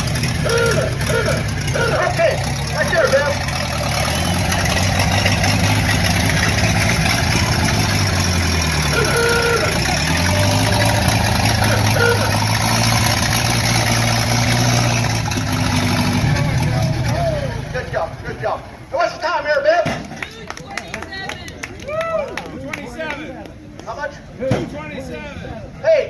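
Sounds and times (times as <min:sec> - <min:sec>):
car engine running: 0:00.0 - 0:18.9.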